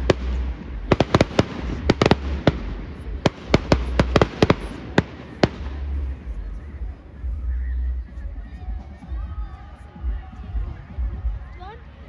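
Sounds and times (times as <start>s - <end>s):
fireworks bangs and crackles: 0.0s - 6.9s
steady low rumble: 0.0s - 12.0s.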